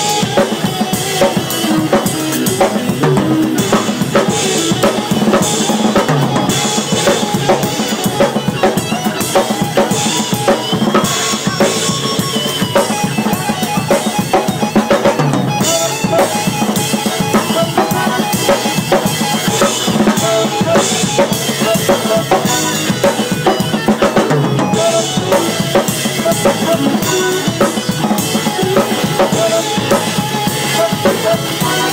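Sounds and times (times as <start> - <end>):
live band playing: 0.0 - 31.9.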